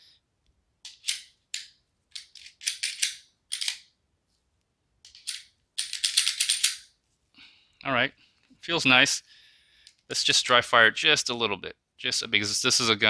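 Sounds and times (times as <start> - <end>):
pistol metallic clicks and rattles: 0.8 - 3.9, 5.0 - 6.9.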